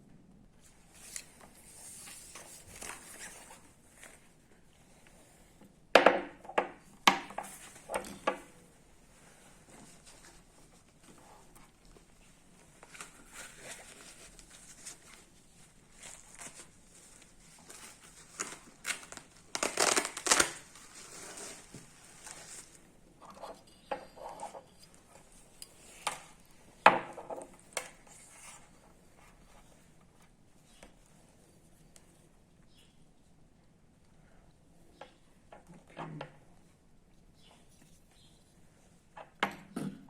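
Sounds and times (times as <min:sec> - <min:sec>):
rustling and crinkling: 0:00.2 - 0:05.8, 0:06.5 - 0:39.2.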